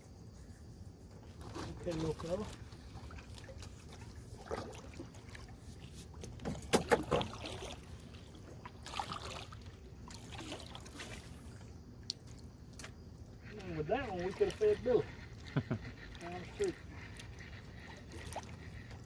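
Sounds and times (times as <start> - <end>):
knocks in a canoe: 6.4 - 7.4.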